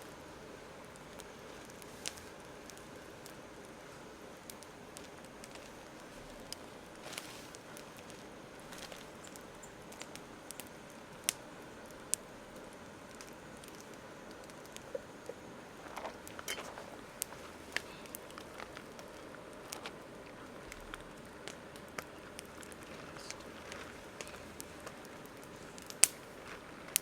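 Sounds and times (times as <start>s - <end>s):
campfire crackling and popping: 0.0s - 27.0s
low steady hiss: 0.0s - 27.0s.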